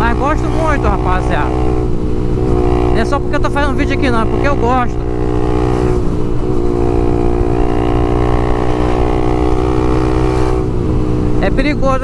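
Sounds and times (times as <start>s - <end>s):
motorcycle engine cruising: 0.0s - 12.0s.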